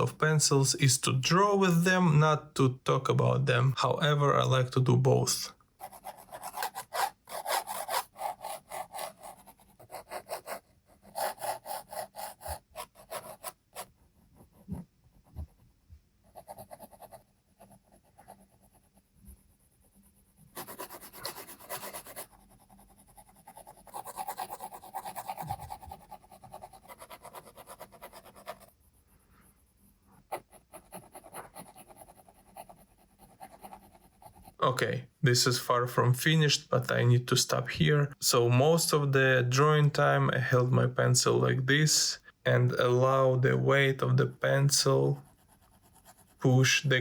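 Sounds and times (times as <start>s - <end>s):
pencil scratching on paper: 5.3s - 34.7s, 44.0s - 47.0s.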